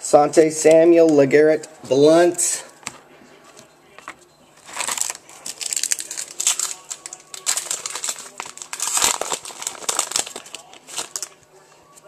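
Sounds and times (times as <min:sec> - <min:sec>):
foil wrapper crinkling: 0:04.6 - 0:11.4.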